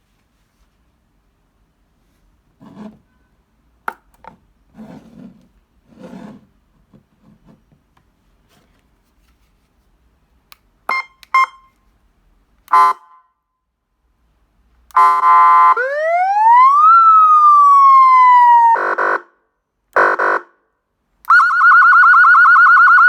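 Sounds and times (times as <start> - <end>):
rubbing and scraping handling noise: 0.0 - 1.0, 2.0 - 3.2, 4.2 - 10.2.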